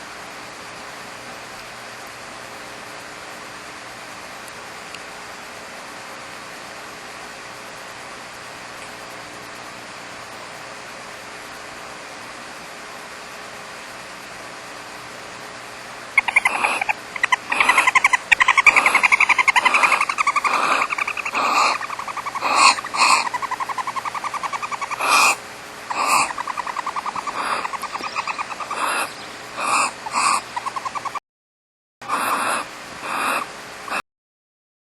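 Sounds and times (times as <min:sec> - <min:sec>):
faint steady hiss: 0:12.5 - 0:31.0
owls rattling chitter: 0:16.0 - 0:31.2, 0:32.1 - 0:34.0
owls hissing screeches: 0:16.2 - 0:31.2, 0:32.0 - 0:34.0.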